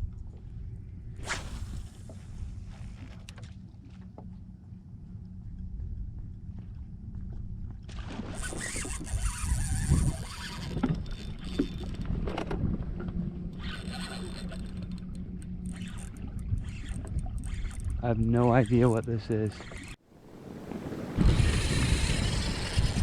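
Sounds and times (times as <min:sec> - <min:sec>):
boat motor humming: 0:08.4 - 0:23.0.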